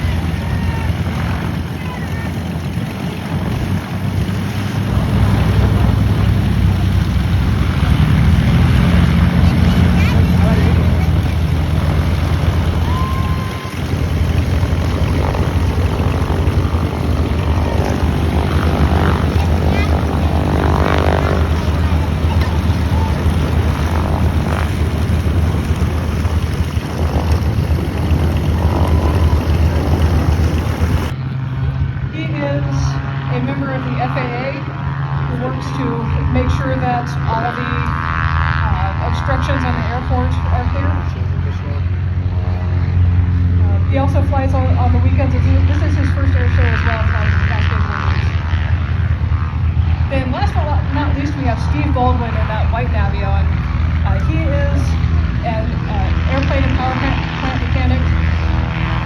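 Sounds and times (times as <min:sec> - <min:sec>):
propeller aircraft engine: 0:00.0 - 0:59.0
wind buffeting microphone: 0:00.0 - 0:59.0.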